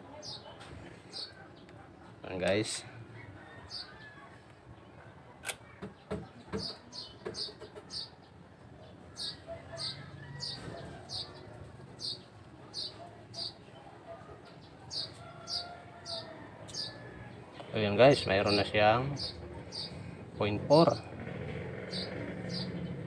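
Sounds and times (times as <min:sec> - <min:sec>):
bird chirping: 0:04.9 - 0:23.0.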